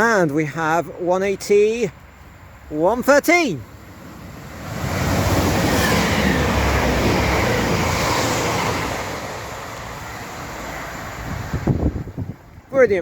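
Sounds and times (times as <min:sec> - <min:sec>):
wheels rushing on rail: 0:03.5 - 0:12.7.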